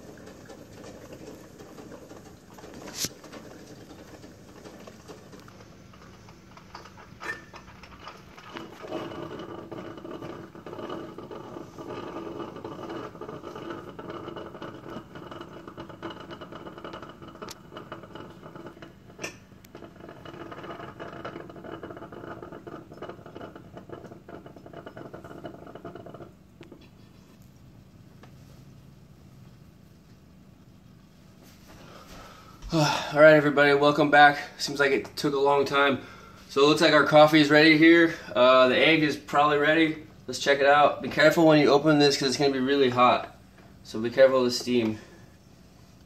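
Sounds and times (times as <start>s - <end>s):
coffee maker dripping: 0.0s - 28.4s.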